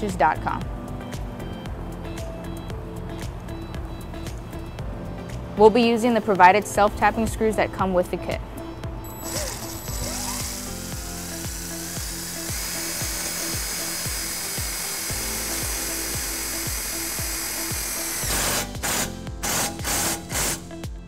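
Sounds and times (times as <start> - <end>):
music with a steady beat: 0.0 - 5.6, 8.3 - 21.0
power drill driving screws: 9.1 - 20.7.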